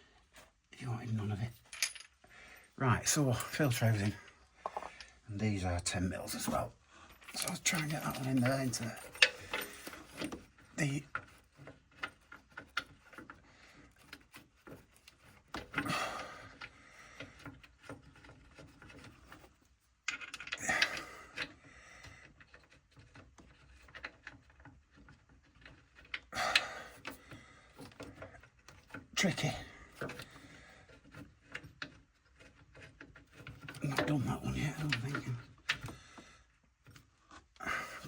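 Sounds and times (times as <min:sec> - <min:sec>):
metal parts clicking and tapping: 0:01.6 - 0:02.2, 0:06.3 - 0:15.9, 0:17.3 - 0:21.6.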